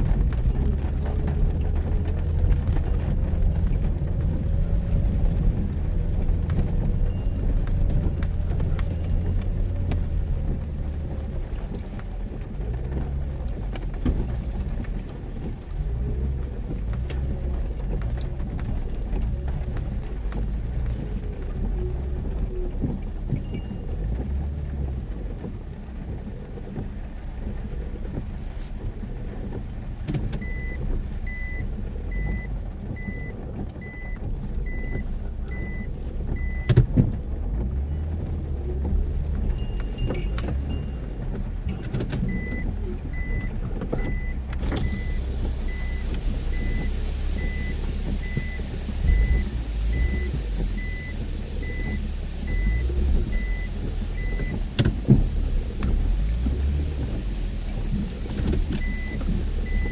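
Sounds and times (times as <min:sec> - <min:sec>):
car engine and road rumble: 0:00.0 - 0:59.9
rain or water spray hiss: 0:27.2 - 0:36.4, 0:42.6 - 0:59.9
high electronic beeps: 0:44.1 - 0:54.5.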